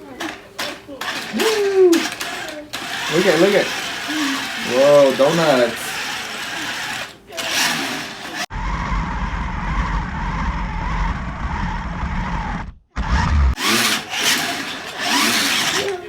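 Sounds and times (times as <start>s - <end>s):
toy car motor whirring: 0.0s - 16.0s
heavy low rumble: 8.5s - 13.6s.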